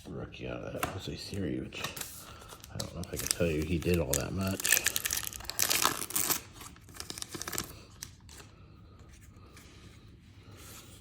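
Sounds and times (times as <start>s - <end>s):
wrapper tearing and crinkling: 2.6s - 8.0s.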